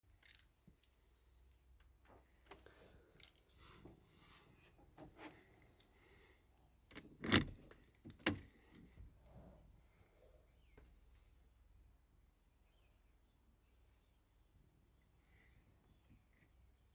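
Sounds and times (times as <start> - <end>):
car keys jangling: 6.9 - 8.6.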